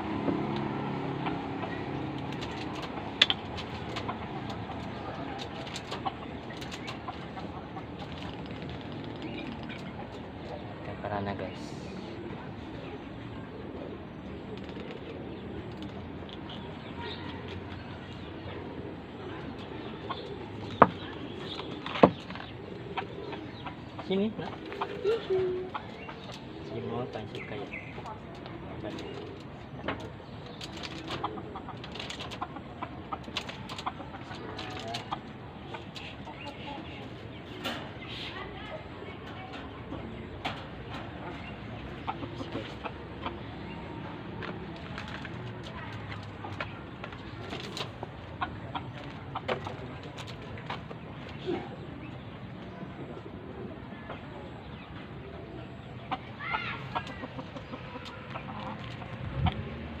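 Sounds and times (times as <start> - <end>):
chicken clucking: 2.5 - 8.0, 18.2 - 59.8.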